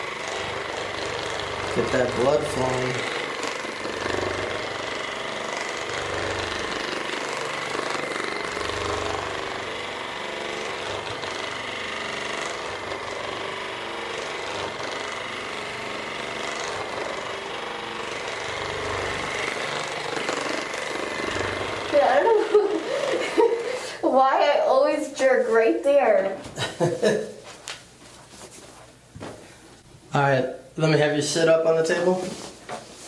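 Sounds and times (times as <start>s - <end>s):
electric massager buzzing: 0.0s - 27.5s.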